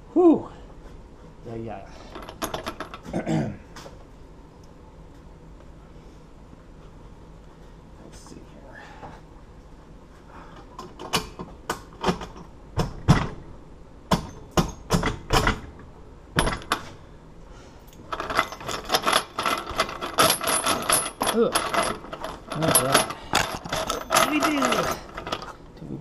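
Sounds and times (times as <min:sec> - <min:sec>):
metal clanks and knocks: 0:18.1 - 0:25.6
dense metal rattling clatter: 0:18.2 - 0:25.5.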